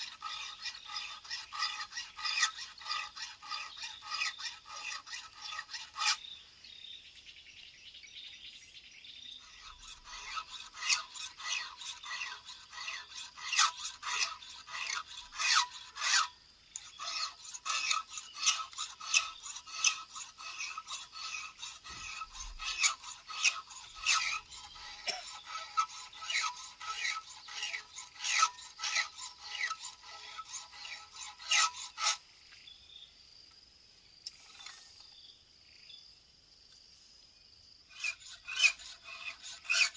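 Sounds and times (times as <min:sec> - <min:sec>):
hand file rasping on chain: 0:00.0 - 0:06.3, 0:09.4 - 0:32.2, 0:37.9 - 0:39.9.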